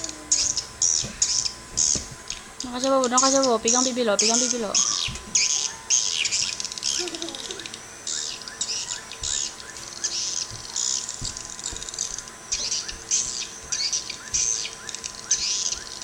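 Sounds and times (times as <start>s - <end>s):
bird call through speaker: 3.3s - 10.4s.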